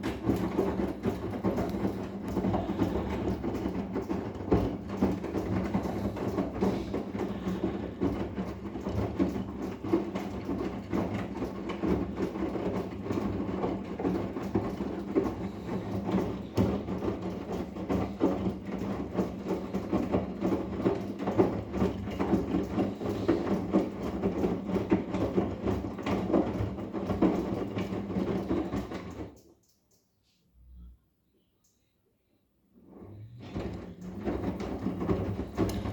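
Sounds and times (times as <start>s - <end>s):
turning drum clattering: 0.0s - 29.4s, 32.9s - 35.9s
washing machine motor hum: 0.0s - 29.5s, 32.8s - 35.9s.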